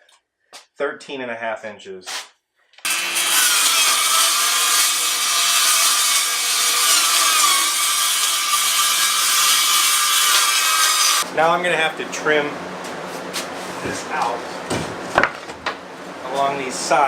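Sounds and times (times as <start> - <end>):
power saw cutting plywood: 2.8 - 11.3.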